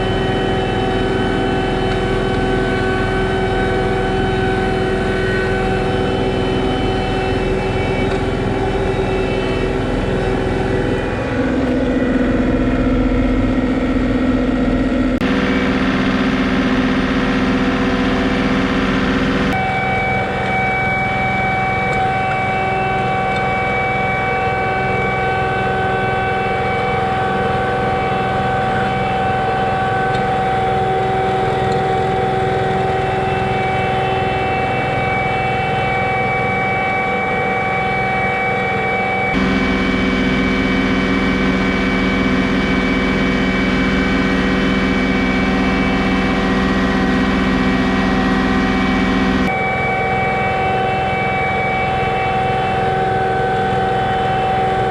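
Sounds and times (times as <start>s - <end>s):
tractor diesel engine running: 0.0s - 19.6s, 39.4s - 49.5s.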